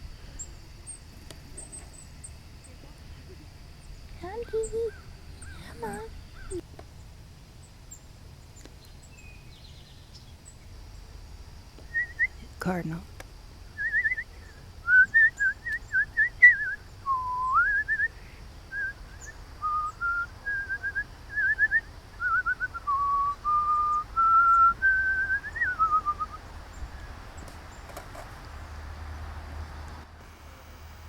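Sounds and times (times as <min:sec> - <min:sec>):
person whistling: 0:14.9 - 0:18.1, 0:19.6 - 0:26.3.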